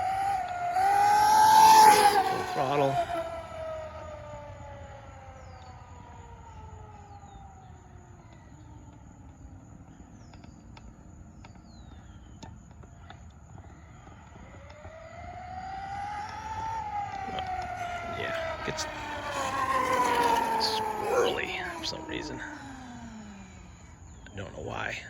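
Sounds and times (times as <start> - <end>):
rc truck electric motor whining: 15.4 - 24.2.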